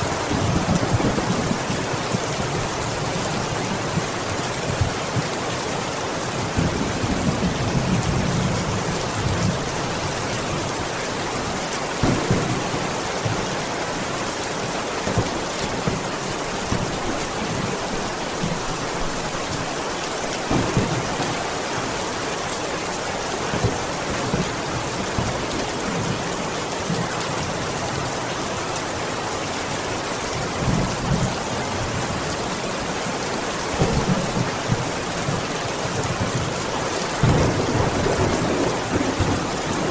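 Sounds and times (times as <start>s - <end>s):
heavy rain on a window: 0.0s - 39.9s
low rumble of thunder: 6.4s - 10.9s, 20.5s - 21.7s, 37.2s - 39.9s.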